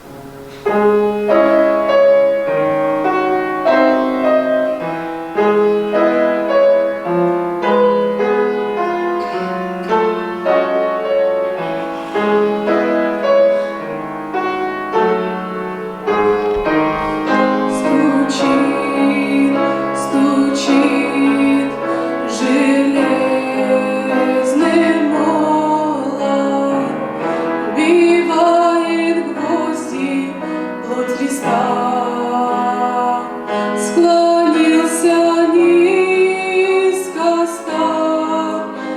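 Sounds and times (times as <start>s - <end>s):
piano playing: 0.0s - 38.9s
woman singing with vibrato: 14.9s - 38.9s.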